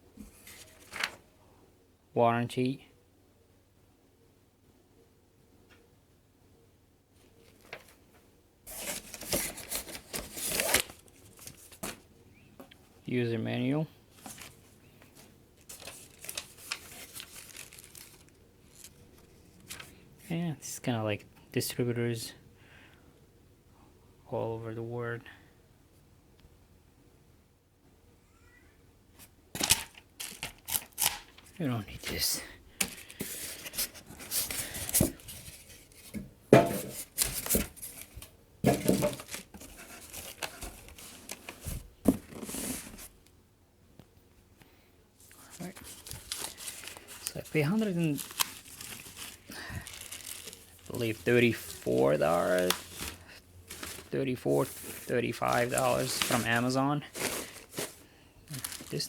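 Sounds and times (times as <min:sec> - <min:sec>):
paper and plastic packaging crinkling: 0:00.3 - 0:01.2, 0:08.7 - 0:12.0, 0:14.2 - 0:20.0, 0:29.6 - 0:43.1, 0:45.2 - 0:59.0.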